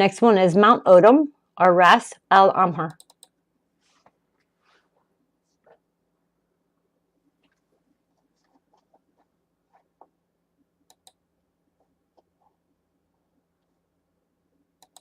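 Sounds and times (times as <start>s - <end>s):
soft clicks: 2.9s - 3.4s, 10.8s - 11.2s, 14.8s - 15.0s.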